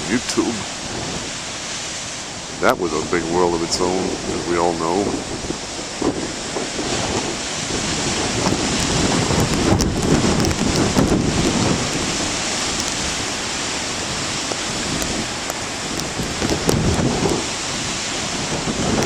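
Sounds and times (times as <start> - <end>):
heavy surf breaking: 0.0 - 19.0
strong wind on microphone: 0.0 - 19.0
raindrop ticks: 8.4 - 12.0, 12.6 - 13.2, 14.4 - 17.4.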